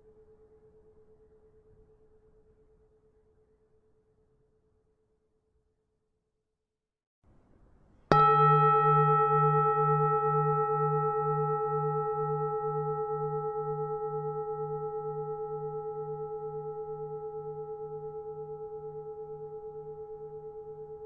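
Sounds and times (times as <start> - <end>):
bronze temple bell ringing: 8.1 - 21.0.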